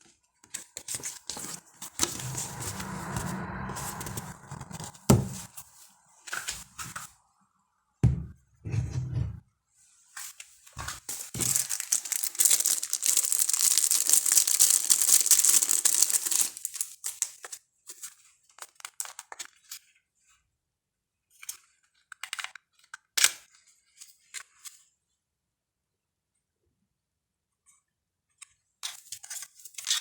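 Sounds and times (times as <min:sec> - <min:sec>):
packaging tearing and crinkling: 0:10.8 - 0:17.6.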